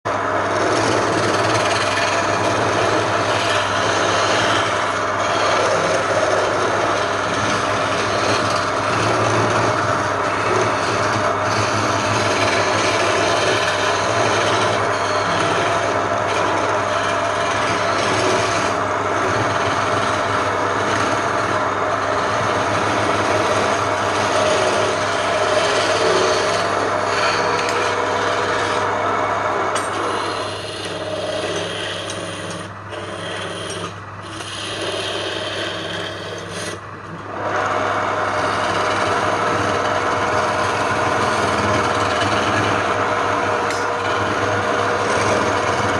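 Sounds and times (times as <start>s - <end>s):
power tool grinding wood: 0.0s - 45.9s
motor hum: 0.1s - 45.9s.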